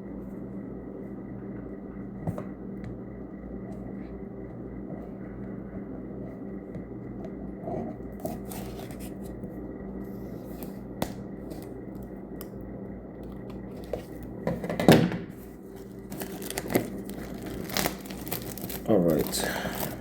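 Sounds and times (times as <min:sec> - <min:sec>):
steady low hum: 0:00.0 - 0:20.0
cardboard rustling and scraping: 0:07.7 - 0:09.5, 0:13.4 - 0:20.0.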